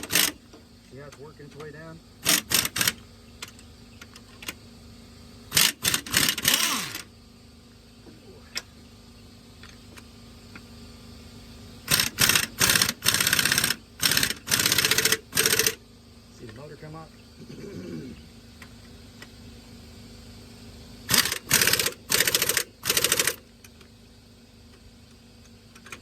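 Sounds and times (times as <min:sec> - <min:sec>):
impact wrench hammering: 0:00.0 - 0:00.4, 0:02.2 - 0:03.0, 0:05.5 - 0:07.1.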